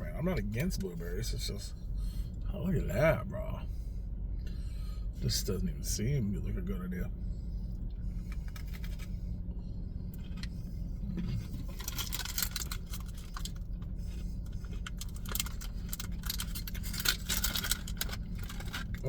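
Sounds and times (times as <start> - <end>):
steady low hum: 0.0 - 19.0
plastic package crinkling: 11.5 - 13.8, 14.7 - 19.0.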